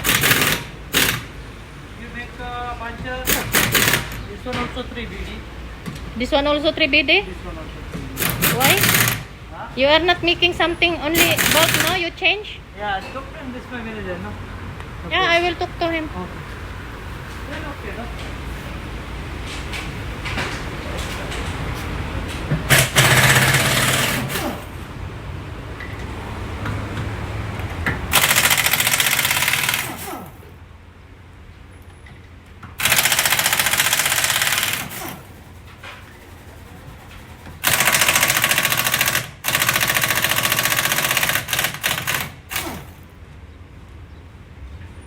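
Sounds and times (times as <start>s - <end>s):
pneumatic impact wrench rattling: 0.0s - 1.4s, 3.2s - 4.3s, 8.2s - 9.4s, 11.1s - 12.2s, 22.7s - 24.9s, 28.1s - 30.6s, 32.8s - 43.2s.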